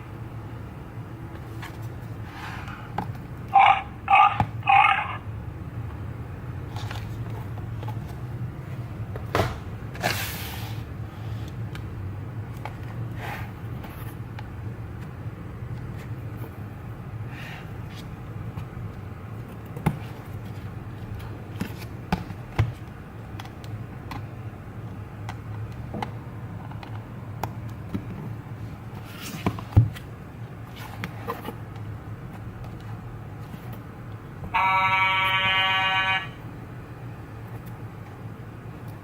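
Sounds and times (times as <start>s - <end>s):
steady low hum: 0.0s - 39.0s
loud buzzing horn tone: 34.5s - 36.4s.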